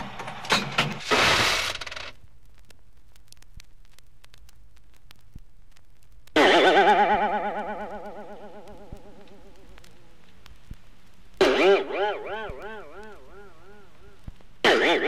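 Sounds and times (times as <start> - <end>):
faint record hiss: 0.0 - 15.0
springy boing: 6.4 - 10.0, 11.4 - 15.0.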